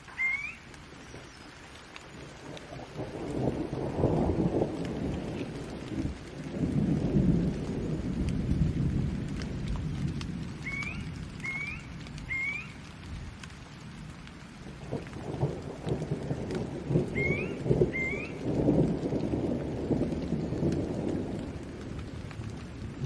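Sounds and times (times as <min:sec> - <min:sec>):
steady rain: 0:00.0 - 0:23.0
thunder rumbling: 0:00.0 - 0:23.0.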